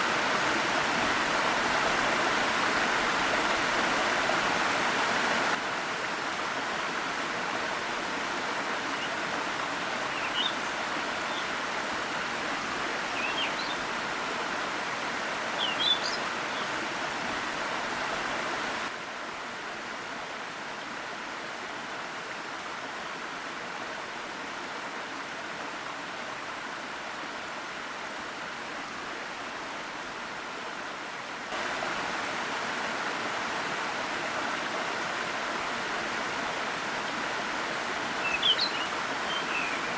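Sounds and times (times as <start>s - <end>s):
waterfall rushing: 0.0s - 39.9s
high bird chirps: 38.2s - 39.9s.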